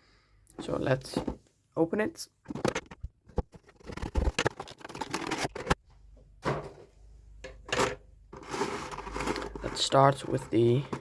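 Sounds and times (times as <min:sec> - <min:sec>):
packaging clicks and rustling: 0:02.6 - 0:05.8, 0:07.7 - 0:11.0.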